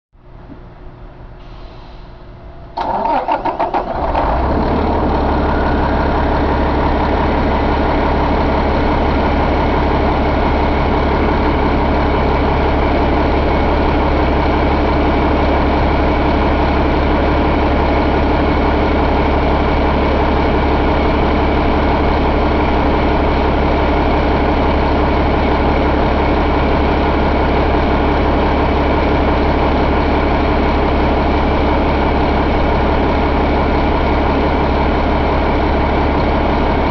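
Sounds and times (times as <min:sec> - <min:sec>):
diesel engine idling: 0:00.2 - 0:36.9
diesel engine cranking: 0:02.7 - 0:21.4.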